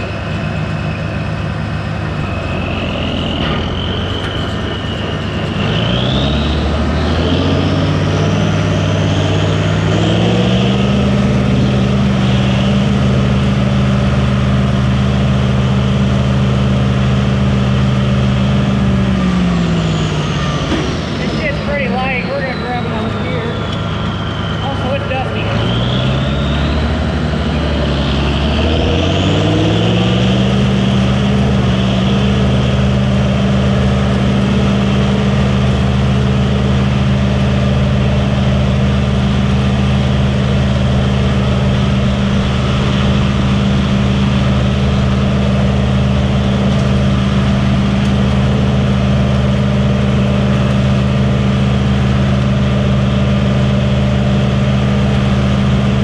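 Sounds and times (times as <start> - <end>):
tractor engine running under load: 0.0 - 56.0.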